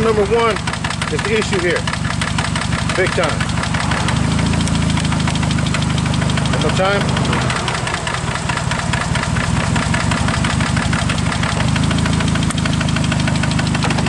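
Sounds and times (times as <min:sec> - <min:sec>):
engine idling with rod knock: 0:00.0 - 0:14.0.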